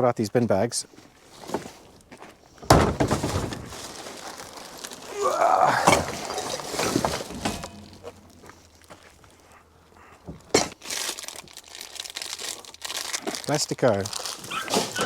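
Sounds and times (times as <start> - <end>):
recycling crashing into bin: 2.6 - 8.4
recycling clattering and rattling: 5.7 - 8.6.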